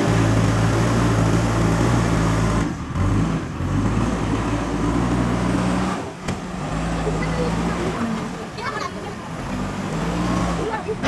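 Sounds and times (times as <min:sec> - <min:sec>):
diesel engine under load: 0:00.0 - 0:11.0.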